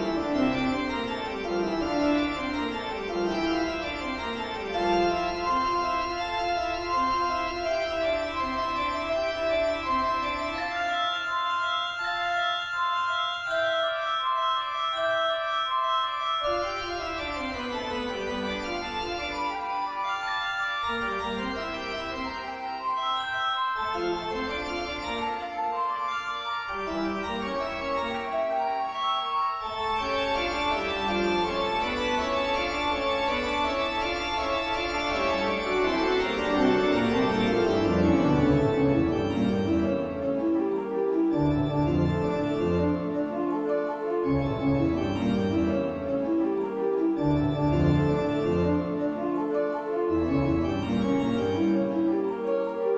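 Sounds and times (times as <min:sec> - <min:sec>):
eerie organ music: 0:00.0 - 0:52.9.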